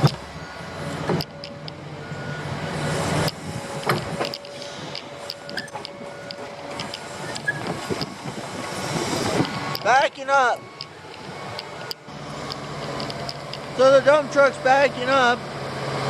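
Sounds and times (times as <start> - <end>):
truck engine running: 0.0 - 16.0
clanks and knocks: 1.0 - 1.8, 3.3 - 10.2.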